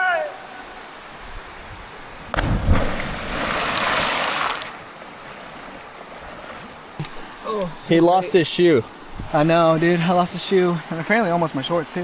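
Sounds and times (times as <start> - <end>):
rush of falling water: 2.1 - 5.2
water splashing: 2.1 - 7.5
heavy smack into water: 2.3 - 3.8.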